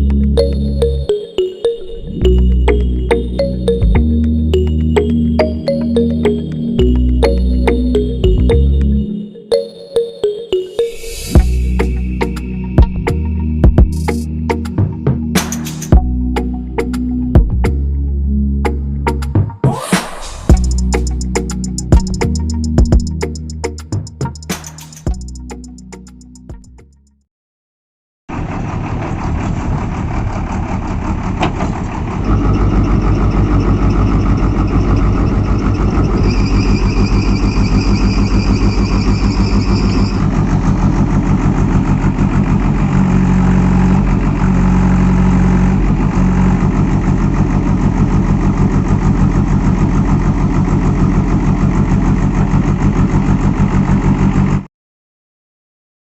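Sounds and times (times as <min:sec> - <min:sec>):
diesel engine running: 0:00.0 - 0:09.2, 0:11.3 - 0:19.4, 0:20.3 - 0:26.8, 0:28.3 - 0:54.7
high-pitched whine: 0:10.7 - 0:15.9, 0:32.3 - 0:40.6.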